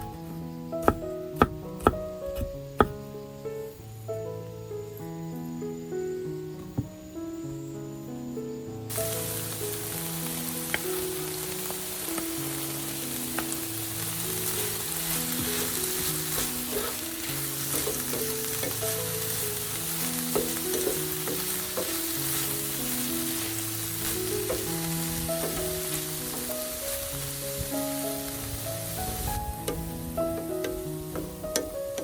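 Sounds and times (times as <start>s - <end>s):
soft background music: 0.0s - 32.0s
food sizzling in a pan: 8.9s - 32.0s.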